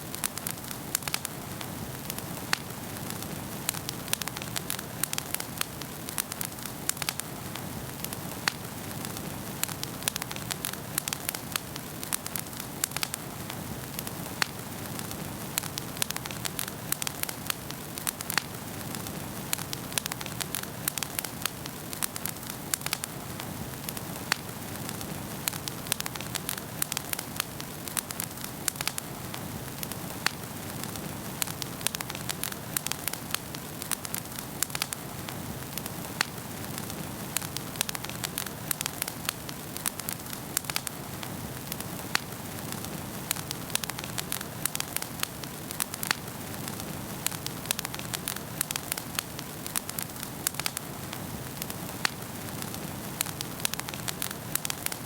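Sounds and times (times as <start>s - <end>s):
hiss of flames: 0.0s - 55.0s
wood fire crackling: 0.0s - 55.0s.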